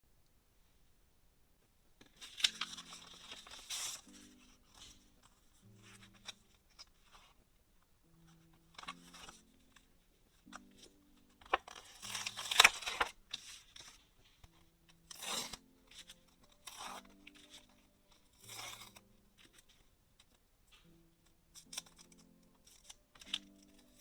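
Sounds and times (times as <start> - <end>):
soft background music: 1.0 - 24.0
packaging being torn open: 11.5 - 13.2.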